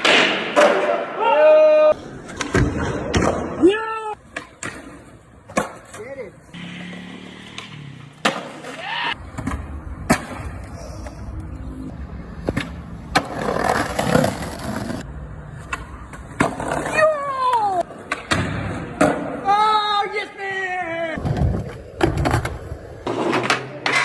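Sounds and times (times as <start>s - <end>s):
skateboard wheels rolling on pavement: 4.1s - 24.0s
falling voice-like cry: 8.7s - 9.2s.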